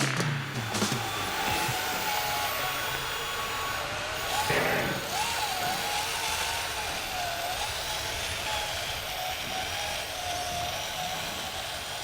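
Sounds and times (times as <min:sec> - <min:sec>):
small electric motor whining: 0:00.2 - 0:12.0.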